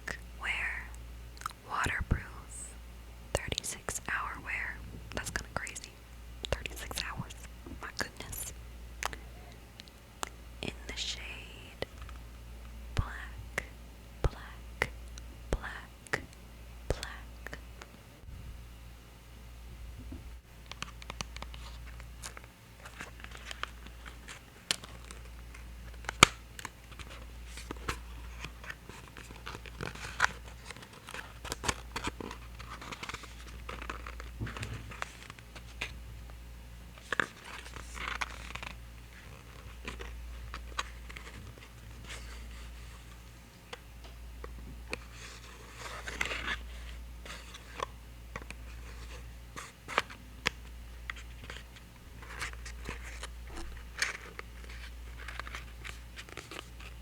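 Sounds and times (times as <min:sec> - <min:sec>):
steady low hum: 0:00.0 - 0:57.0
packaging crinkling and rubbing: 0:20.6 - 0:36.0, 0:36.9 - 0:43.3, 0:44.9 - 0:57.0.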